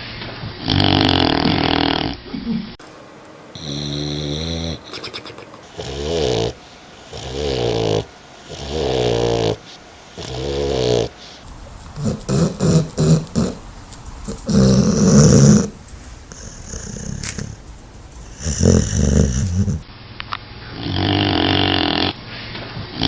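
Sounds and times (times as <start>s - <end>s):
dog snoring: 0.6s - 2.2s, 3.5s - 13.6s, 14.2s - 17.6s, 18.2s - 19.9s, 20.7s - 22.2s.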